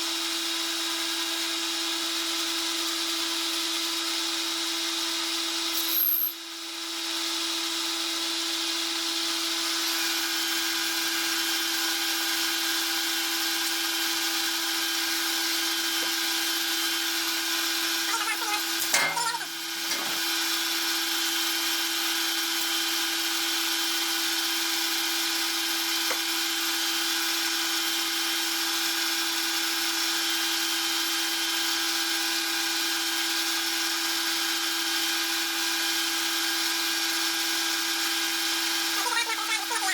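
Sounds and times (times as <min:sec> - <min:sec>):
metal lathe humming and whining: 0:09.4 - 0:18.1.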